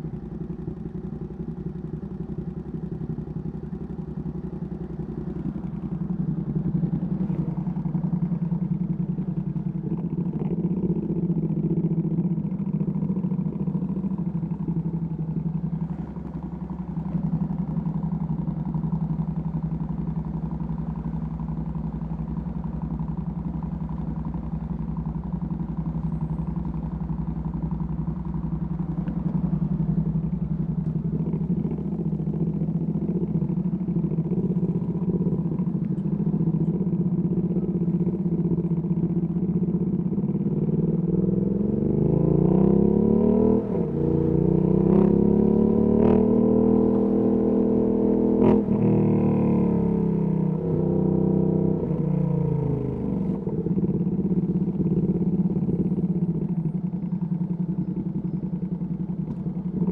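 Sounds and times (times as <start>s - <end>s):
motorcycle engine revving: 31.1s - 59.9s.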